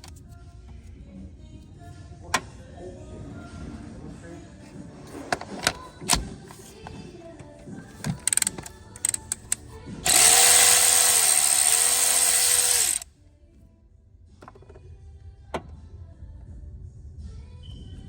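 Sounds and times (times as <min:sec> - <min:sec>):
tools clicking and knocking: 0:08.0 - 0:13.0
cordless power tool spinning: 0:08.2 - 0:13.0.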